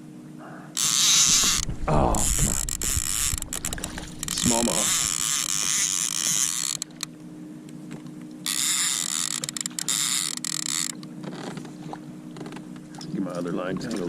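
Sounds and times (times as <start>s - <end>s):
low hum: 0.0s - 13.0s
fishing reel cranking and clicking: 0.8s - 7.1s, 8.4s - 11.5s.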